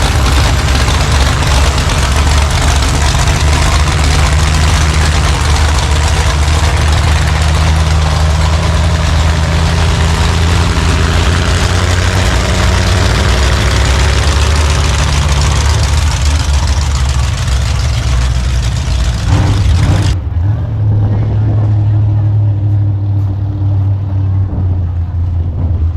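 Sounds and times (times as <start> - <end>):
car engine idling: 0.0 - 25.9.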